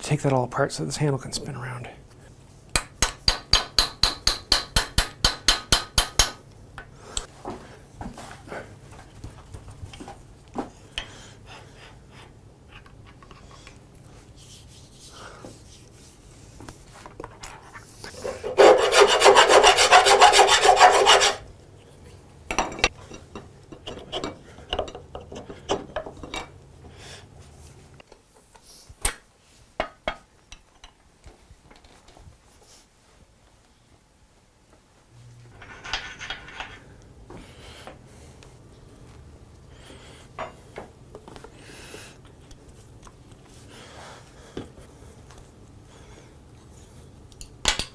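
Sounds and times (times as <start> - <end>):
rapid scraping strokes: 18.2 - 21.4
clicks and knocks of parts: 47.3 - 47.9.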